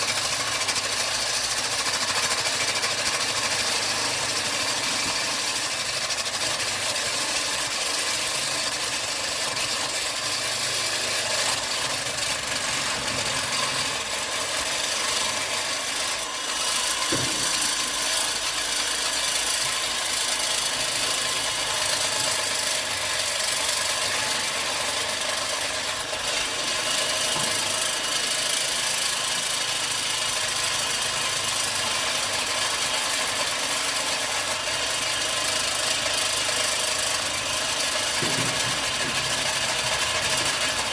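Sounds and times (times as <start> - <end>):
machine running with rattles: 0.0 - 40.9
knock: 17.0 - 18.0, 38.2 - 39.6.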